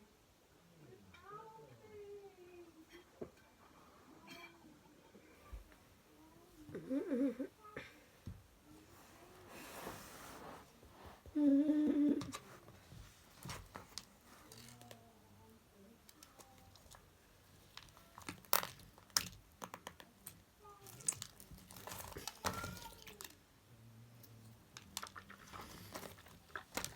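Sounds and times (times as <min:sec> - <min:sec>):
person humming: 0:11.3 - 0:12.3
slime packaging crinkles and clicks: 0:16.1 - 0:23.4, 0:24.8 - 0:26.9.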